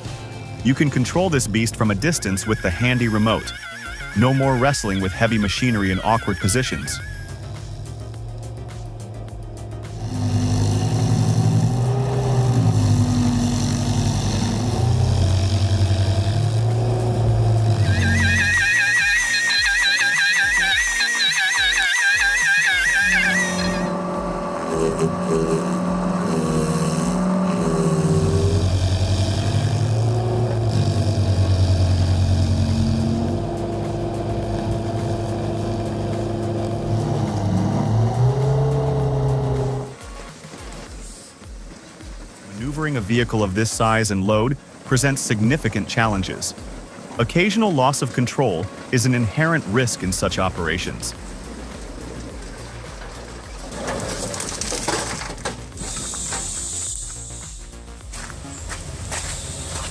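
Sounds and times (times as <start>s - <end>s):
large engine running: 4.2s - 18.6s, 23.1s - 40.1s.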